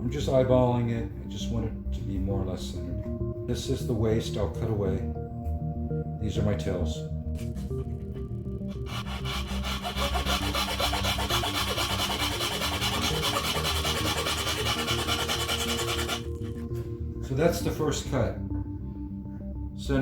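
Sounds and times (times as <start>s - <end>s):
hand saw cutting wood: 8.7s - 16.6s.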